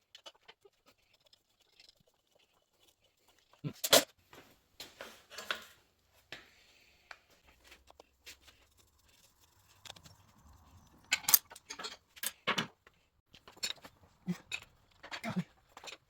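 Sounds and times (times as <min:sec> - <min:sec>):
tools and parts clicking: 0:09.6 - 0:16.0.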